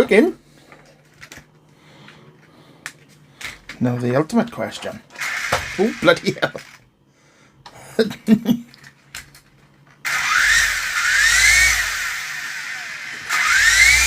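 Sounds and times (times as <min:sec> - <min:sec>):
toy helicopter motor whine: 0:05.2 - 0:06.8, 0:10.0 - 0:14.0
low hum of spinning rotors: 0:08.9 - 0:14.0.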